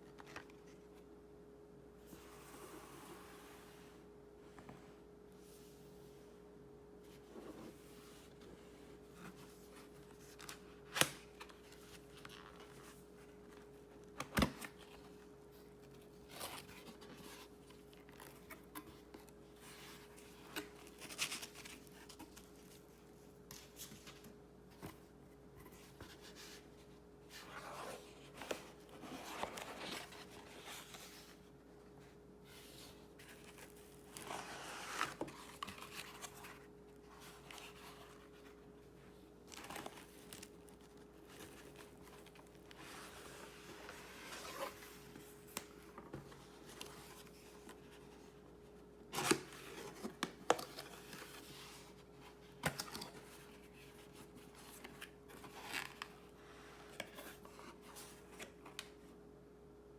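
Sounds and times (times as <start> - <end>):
packaging rustling and crinkling: 32.9 - 48.1.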